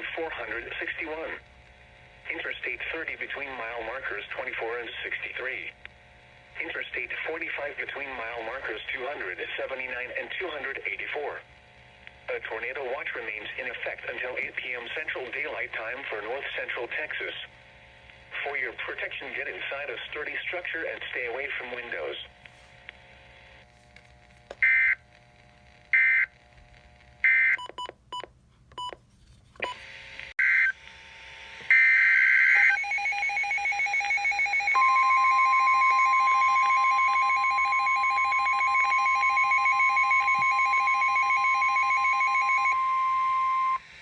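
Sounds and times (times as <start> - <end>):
long steady high beep: 31.7 - 43.8.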